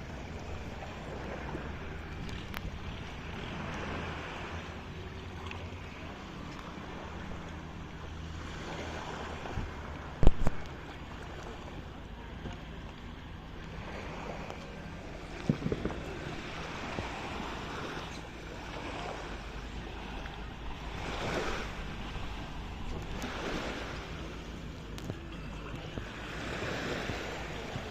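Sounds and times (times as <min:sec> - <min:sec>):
low steady hum: 0:00.0 - 0:27.9
sea water washing: 0:00.0 - 0:27.9
wind on microphone: 0:08.7 - 0:10.8, 0:13.6 - 0:27.9.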